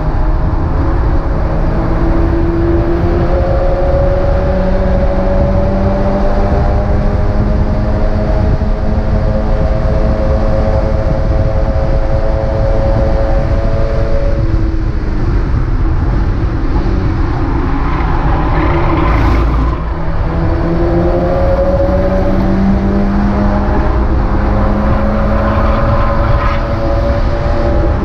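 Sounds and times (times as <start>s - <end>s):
race car engine revving: 0.0s - 28.0s.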